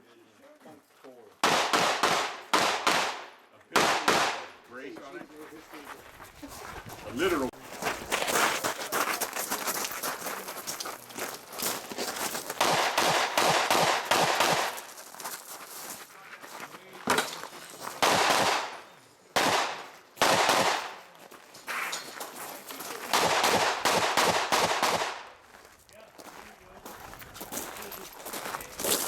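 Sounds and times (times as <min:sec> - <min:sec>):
rifle shots with echo: 0:01.4 - 0:04.6, 0:12.6 - 0:14.8, 0:18.0 - 0:21.1, 0:23.1 - 0:25.4.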